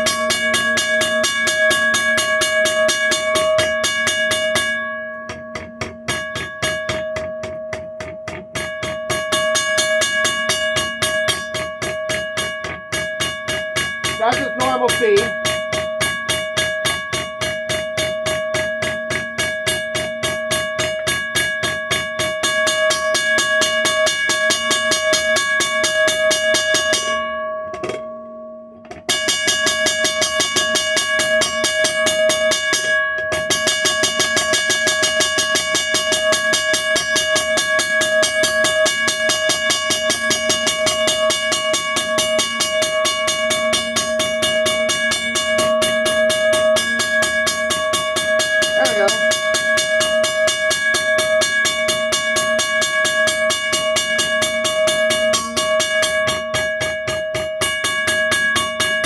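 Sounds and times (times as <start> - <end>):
mechanical crossing bell ringing: 8.6 - 17.2, 39.8 - 53.8.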